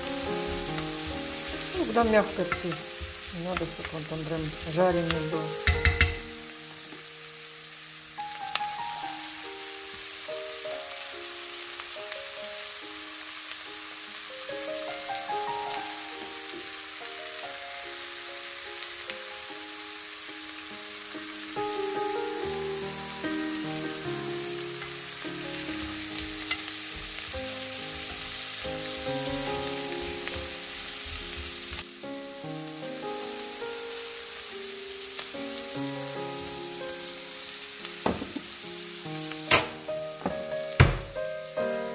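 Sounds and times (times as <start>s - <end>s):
melodic background music: 0.0s - 7.2s, 35.3s - 41.9s
food sizzling in a pan: 0.0s - 41.9s.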